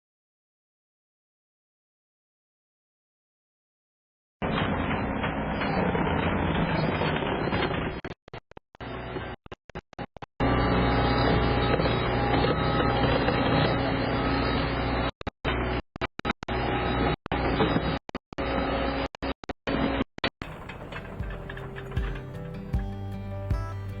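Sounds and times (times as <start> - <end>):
diesel engine running: 20.4 - 24.0
music: 20.4 - 24.0.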